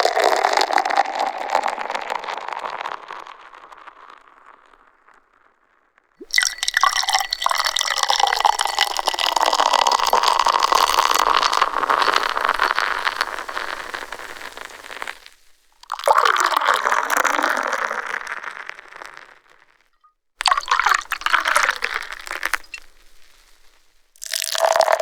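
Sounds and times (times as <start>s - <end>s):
beer pouring and fizzing: 0.0s - 3.1s, 6.2s - 18.5s, 20.4s - 23.2s, 24.2s - 25.0s.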